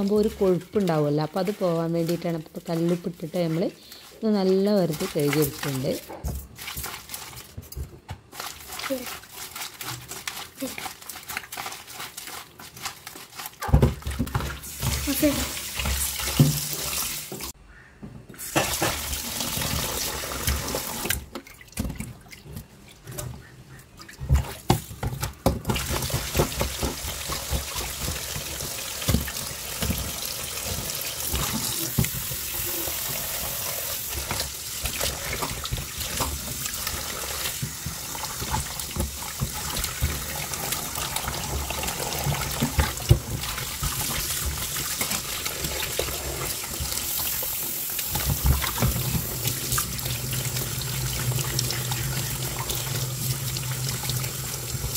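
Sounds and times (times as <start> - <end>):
tap water running into sink: 13.6 - 17.6, 18.5 - 22.6, 24.2 - 54.9.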